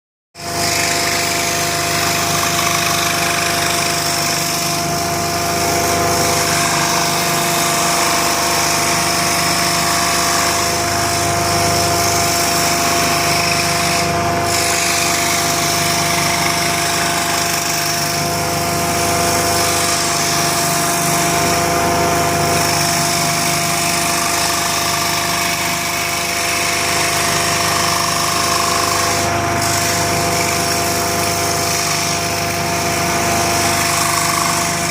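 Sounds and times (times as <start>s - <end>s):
power tool whining: 0.4s - 34.9s.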